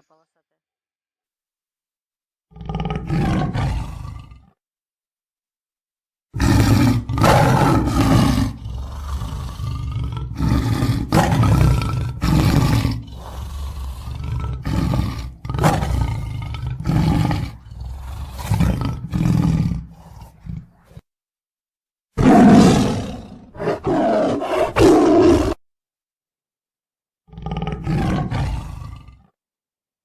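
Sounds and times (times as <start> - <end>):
tiger roaring: 2.5 - 4.6, 6.3 - 21.0, 22.2 - 25.6, 27.3 - 29.3.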